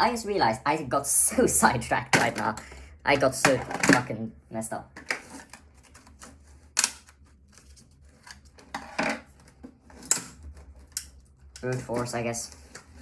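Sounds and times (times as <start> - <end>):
rustling handling noise: 4.9 - 13.0.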